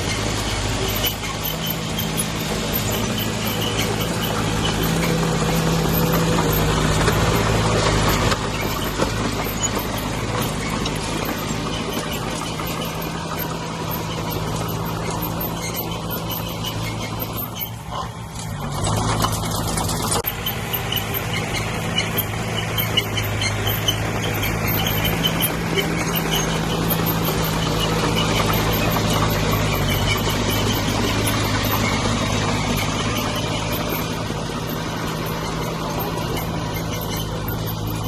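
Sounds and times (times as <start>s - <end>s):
bulldozer diesel engine running: 0.0s - 38.0s
short high squeaks: 0.0s - 38.0s.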